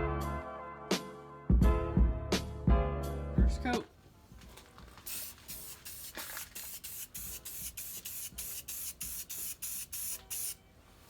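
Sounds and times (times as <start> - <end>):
spray paint hissing bursts: 5.0 - 10.6.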